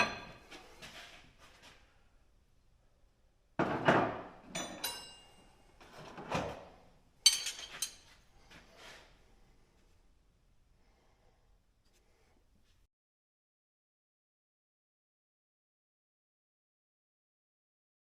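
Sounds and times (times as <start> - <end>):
metal tools clanking: 4.5 - 5.4, 7.2 - 8.2
high metallic ring: 4.6 - 5.4.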